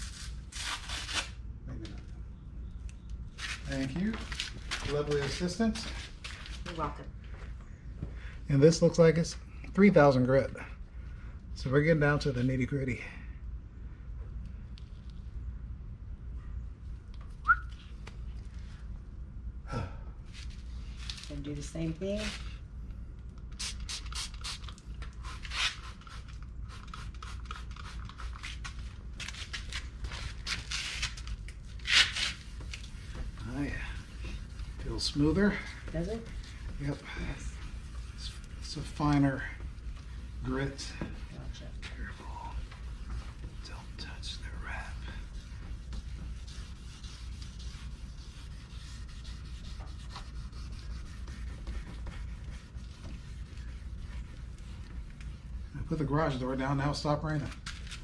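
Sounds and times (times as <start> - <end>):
sandpaper rubbing on plastic: 25.2 - 56.3
wet sanding plastic by hand: 44.9 - 56.3.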